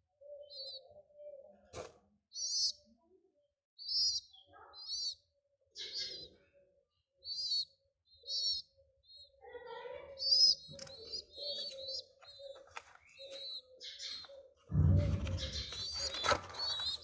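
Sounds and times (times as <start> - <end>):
young pigeons squeaking: 0.2 - 3.0, 3.8 - 17.0
loud noisy sound: 14.7 - 16.0.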